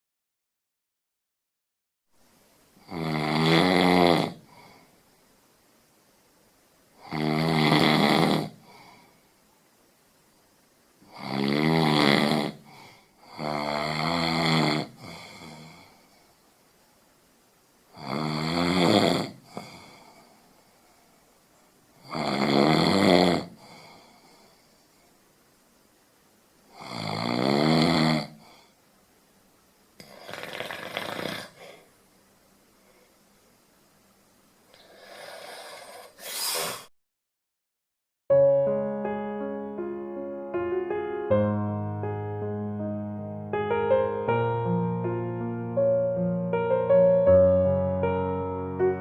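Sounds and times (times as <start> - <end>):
person snoring: 2.8 - 4.9, 7.0 - 9.2, 11.0 - 16.3, 17.9 - 20.7, 22.0 - 24.8, 26.7 - 28.8, 30.0 - 31.9, 34.7 - 36.9.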